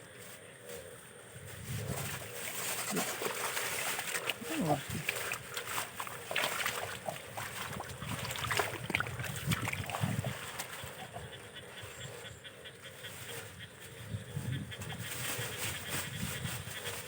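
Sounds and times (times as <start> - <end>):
hands splashing in shallow water: 2.4 - 11.2.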